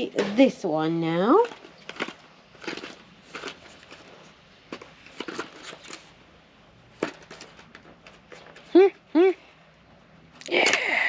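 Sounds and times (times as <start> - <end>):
packaging rustling and clicking: 1.3 - 6.2, 7.0 - 8.7.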